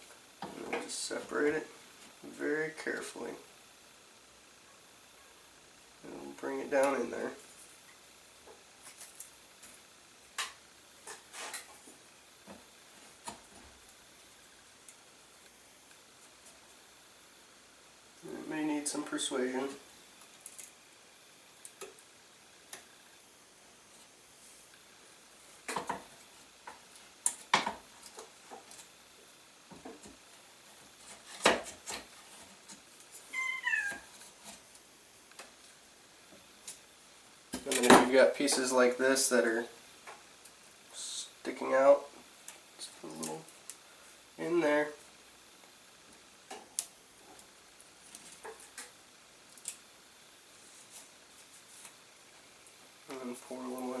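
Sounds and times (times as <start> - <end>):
meow-like cry: 33.3 - 34.1.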